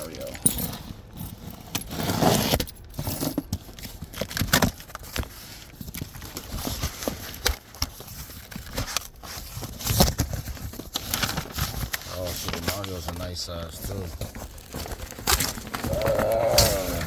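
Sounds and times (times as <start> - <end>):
plastic wrapping tearing and crinkling: 3.7 - 17.0.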